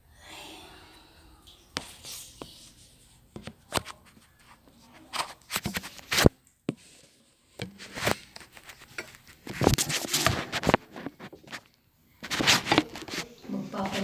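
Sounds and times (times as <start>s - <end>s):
objects being handled: 3.3s - 14.0s.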